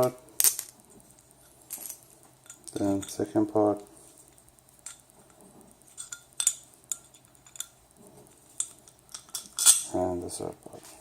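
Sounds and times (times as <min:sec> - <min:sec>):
hardware parts clinking: 0:01.4 - 0:03.6, 0:05.9 - 0:07.8, 0:08.6 - 0:10.0.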